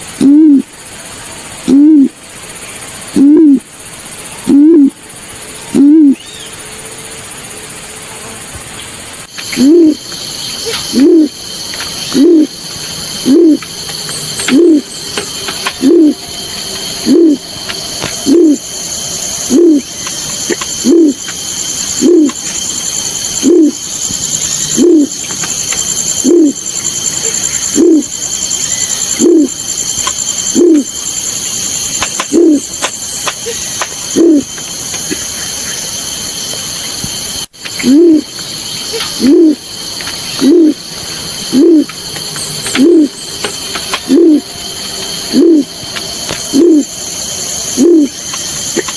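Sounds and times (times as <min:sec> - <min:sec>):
steady high hiss: 0:00.0 - 0:48.9
deep bird hoot: 0:00.1 - 0:00.7, 0:01.6 - 0:02.2, 0:03.2 - 0:03.7, 0:04.5 - 0:05.0, 0:05.7 - 0:06.5, 0:09.5 - 0:11.4, 0:12.1 - 0:12.6, 0:13.2 - 0:13.8, 0:14.4 - 0:16.4, 0:17.0 - 0:17.6, 0:18.2 - 0:18.7, 0:19.4 - 0:21.3, 0:21.9 - 0:22.4, 0:23.4 - 0:24.0, 0:24.7 - 0:25.3, 0:26.2 - 0:28.2, 0:29.0 - 0:29.6, 0:30.5 - 0:31.0, 0:32.1 - 0:32.7, 0:33.4 - 0:34.6, 0:37.8 - 0:38.3, 0:38.9 - 0:39.7, 0:40.3 - 0:42.0, 0:42.7 - 0:43.3, 0:43.9 - 0:44.6, 0:45.3 - 0:45.8, 0:46.4 - 0:47.0, 0:47.7 - 0:48.2.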